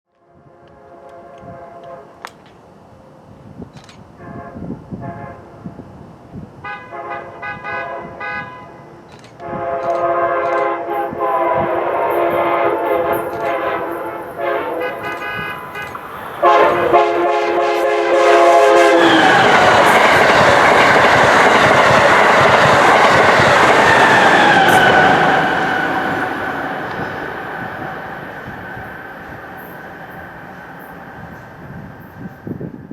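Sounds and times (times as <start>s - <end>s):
train horn blasts: 0.1s - 2.4s, 4.2s - 5.9s, 6.6s - 31.8s
train rushing past: 4.2s - 32.9s.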